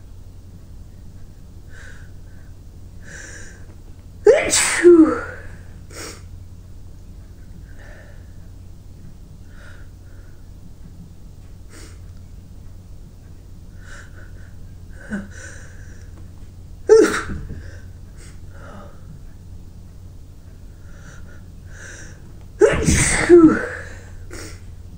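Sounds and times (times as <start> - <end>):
loud sneeze: 4.2 - 5.6, 16.9 - 17.5, 22.6 - 24.6
person sniffing and breathing: 23.9 - 24.6.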